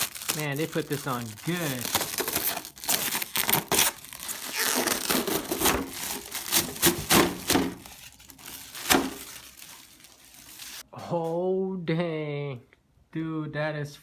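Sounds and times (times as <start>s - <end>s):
packaging crinkling and tearing: 0.0s - 10.8s.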